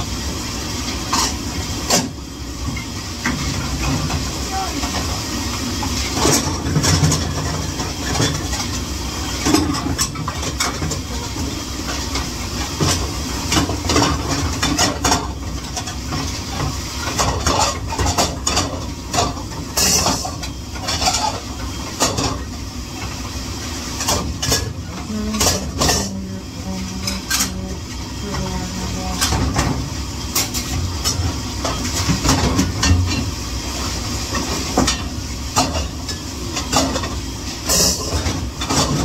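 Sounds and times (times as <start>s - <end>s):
dishes clinking and clattering: 11.9s - 22.5s, 23.9s - 26.2s.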